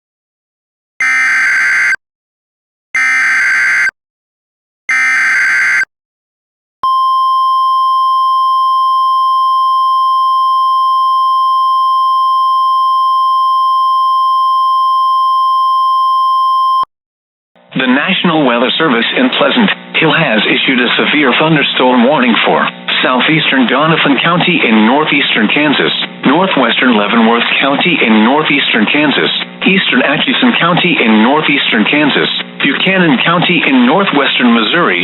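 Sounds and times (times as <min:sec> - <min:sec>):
steady single-pitch attention tone: 0:04.9 - 0:05.9, 0:06.8 - 0:16.8.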